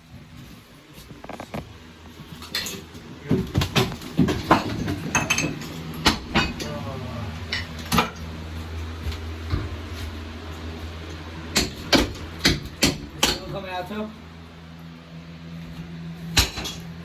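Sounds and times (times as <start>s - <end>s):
debris knocking and clattering: 2.4s - 6.6s.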